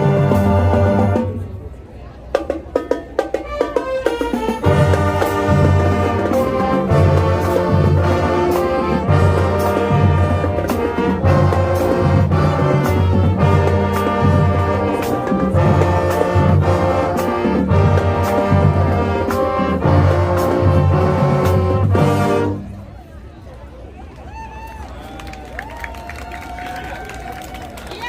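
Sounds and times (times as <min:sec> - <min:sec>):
trumpets and trombones: 0:00.0 - 0:01.6, 0:03.3 - 0:22.9
drums beating: 0:02.3 - 0:22.5.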